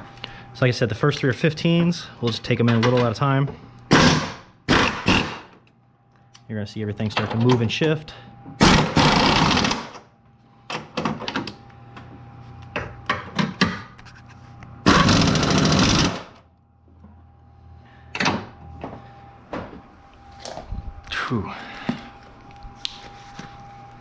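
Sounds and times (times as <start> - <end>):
impact wrench bursts: 3.9 - 5.6, 8.6 - 10.0, 14.8 - 16.4.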